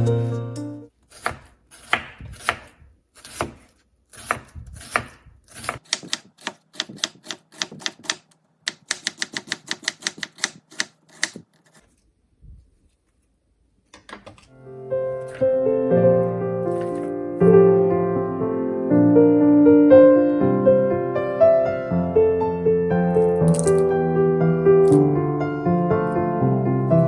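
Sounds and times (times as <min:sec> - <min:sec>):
knife chopping on cutting board: 0:01.1 - 0:11.5.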